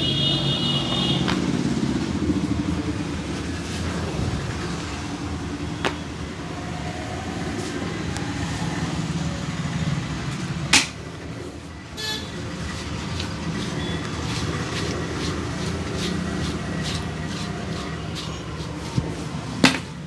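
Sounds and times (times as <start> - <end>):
street traffic rumble: 0.0 - 20.0
loud sharp smack: 10.7 - 11.0.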